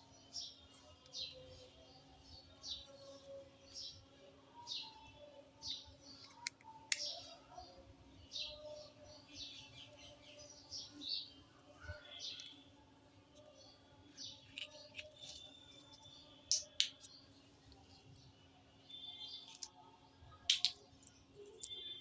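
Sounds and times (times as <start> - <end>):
small birds chirping: 0.0 - 22.0.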